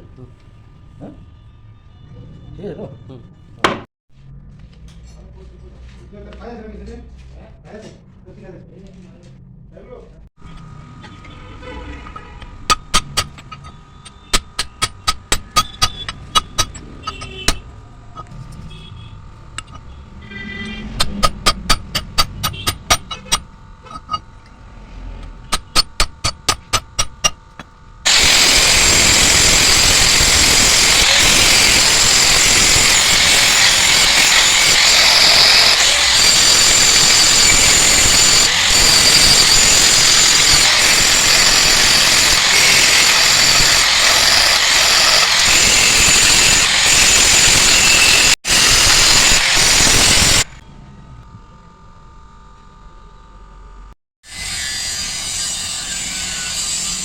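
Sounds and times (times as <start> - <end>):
metalworking tool grinding: 21.0 - 24.3, 25.5 - 50.6, 54.3 - 57.0.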